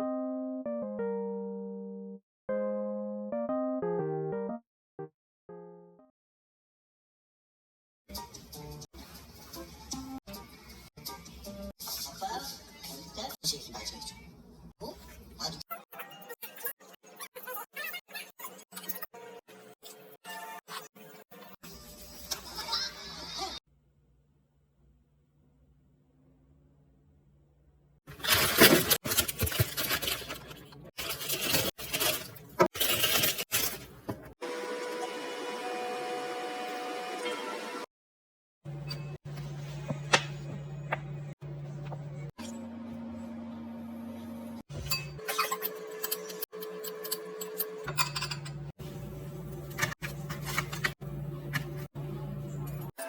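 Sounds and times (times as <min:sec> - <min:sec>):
objects clinking and clattering: 0:28.2 - 0:34.0.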